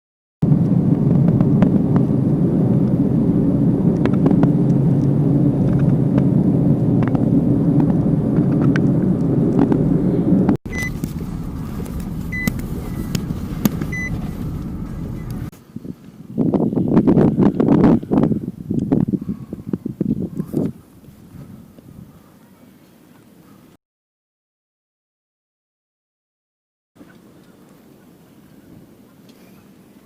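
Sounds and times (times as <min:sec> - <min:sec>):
car road and engine rumble: 0:00.4 - 0:15.5
quiet hum: 0:07.8 - 0:15.5
short high beeps: 0:10.7 - 0:11.2, 0:12.2 - 0:13.2, 0:13.8 - 0:14.4.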